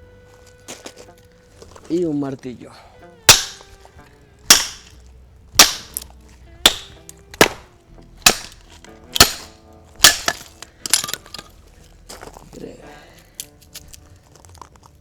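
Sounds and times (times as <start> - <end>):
hammer striking axe head: 3.3 - 3.8, 4.4 - 11.5.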